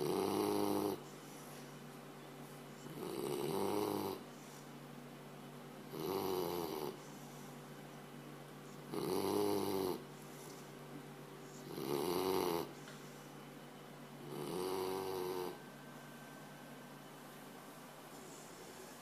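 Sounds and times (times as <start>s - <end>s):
dog snoring: 0.0s - 1.1s, 2.8s - 4.3s, 5.9s - 7.2s, 8.8s - 10.6s, 11.5s - 12.8s, 14.2s - 15.6s.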